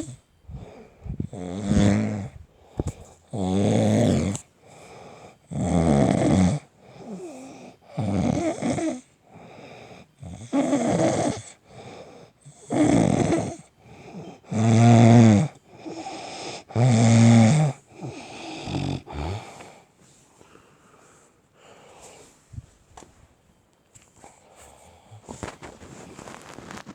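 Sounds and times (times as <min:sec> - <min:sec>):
loud rasping snores: 0:00.0 - 0:02.4, 0:03.3 - 0:04.5, 0:05.4 - 0:09.1, 0:10.2 - 0:11.6, 0:12.4 - 0:19.6
quiet breaths: 0:00.0 - 0:26.9.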